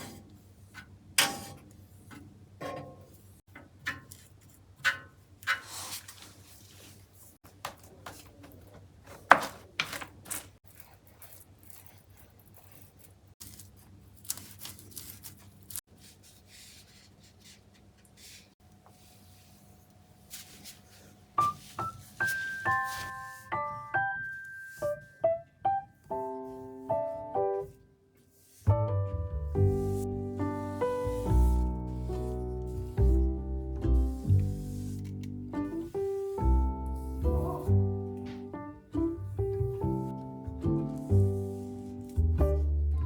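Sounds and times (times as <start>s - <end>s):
soft piano music: 21.4s - 27.9s, 28.7s - 43.0s.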